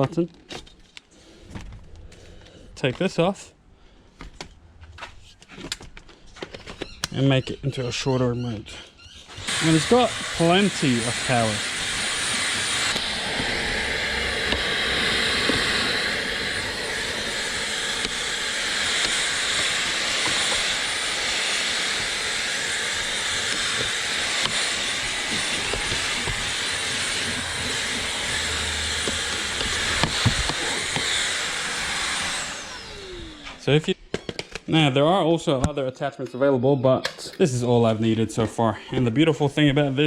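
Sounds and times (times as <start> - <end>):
vacuum cleaner motor whine: 9.3 - 34.9.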